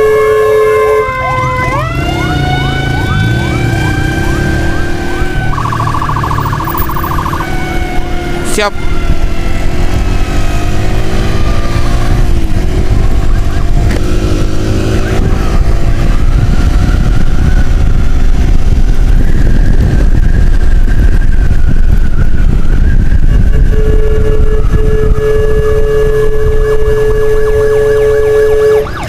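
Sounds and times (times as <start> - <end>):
motorcycle riding at speed: 0.0 - 29.0
wind rumble on microphone: 0.0 - 29.0
steady tones falling in pitch: 0.6 - 9.2.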